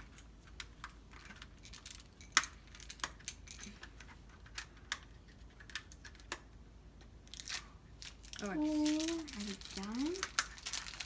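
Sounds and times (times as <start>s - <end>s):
plastic toy pieces clicking: 0.1s - 6.5s, 7.3s - 11.0s
packaging being handled: 7.3s - 11.0s.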